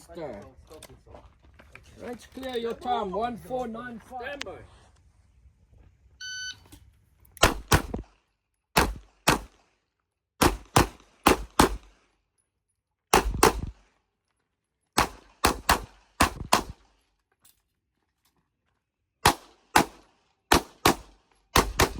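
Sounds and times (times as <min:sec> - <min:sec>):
electronic timer beep: 0:06.2 - 0:06.6
rapid handgun shots: 0:07.4 - 0:08.2, 0:08.8 - 0:09.7, 0:10.4 - 0:12.0, 0:13.1 - 0:13.9, 0:15.0 - 0:16.9, 0:19.2 - 0:21.9.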